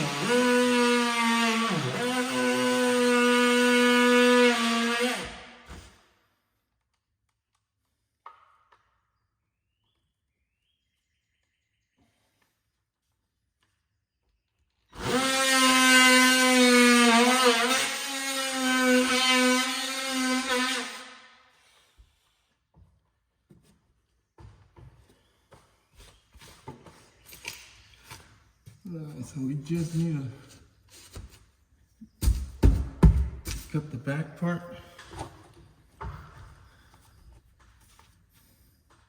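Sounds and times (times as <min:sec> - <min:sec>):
power tool motor winding down: 0:00.0 - 0:05.5, 0:15.0 - 0:21.1.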